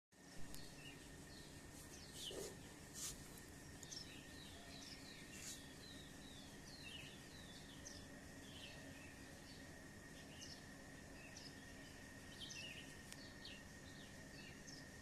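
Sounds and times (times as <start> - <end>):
faint steady hum: 0.2 - 15.0
small birds chirping: 0.2 - 15.0.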